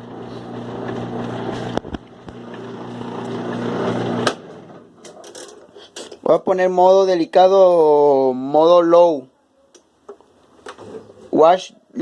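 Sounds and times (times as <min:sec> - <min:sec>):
washing machine motor humming: 0:00.0 - 0:05.8.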